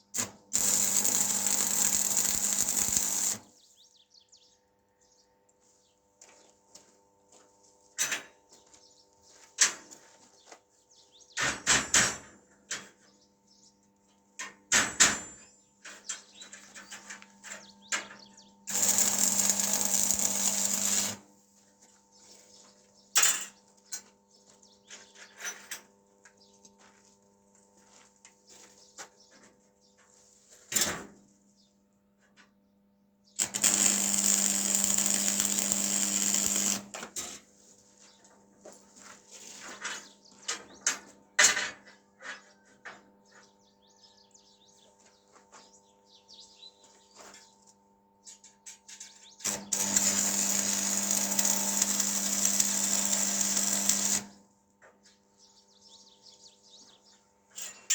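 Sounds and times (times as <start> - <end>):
power tool running: 0.5 - 3.5, 18.7 - 21.3, 33.4 - 37.0, 49.5 - 54.4.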